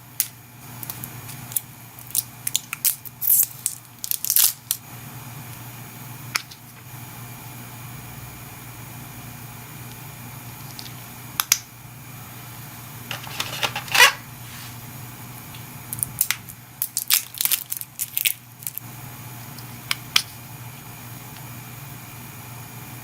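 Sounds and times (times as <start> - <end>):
steady low hum: 4.8 - 16.8
packaging rustling and clicking: 13.1 - 14.2.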